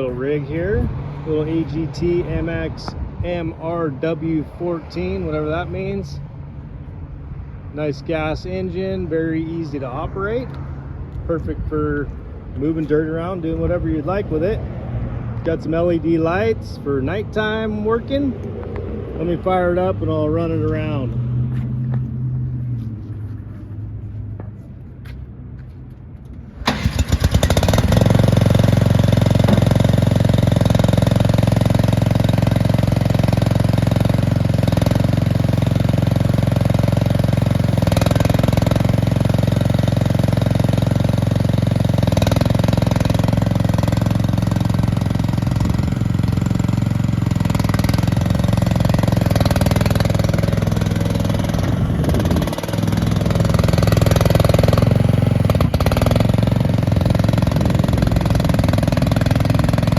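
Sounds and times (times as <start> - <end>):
small gas engine cranking and running: 26.6 - 59.9.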